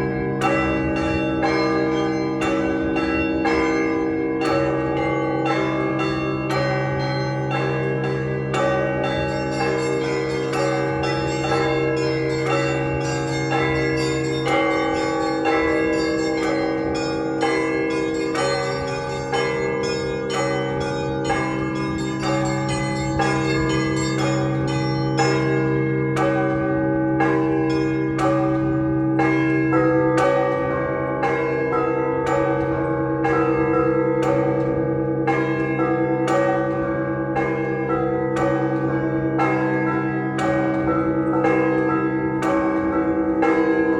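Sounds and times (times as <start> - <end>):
hum of large bells: 0.0 - 43.9
small church bells ringing: 0.0 - 43.9.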